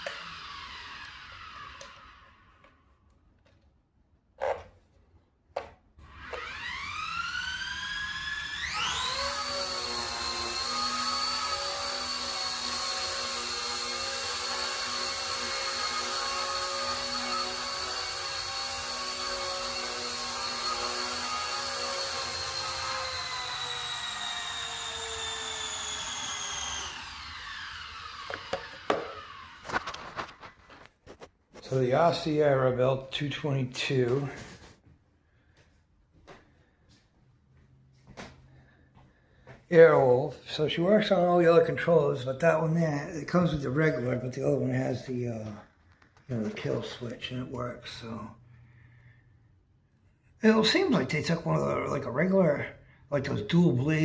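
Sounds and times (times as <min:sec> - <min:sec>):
rc helicopter rotor whining: 0:00.0 - 0:02.6, 0:06.0 - 0:30.3.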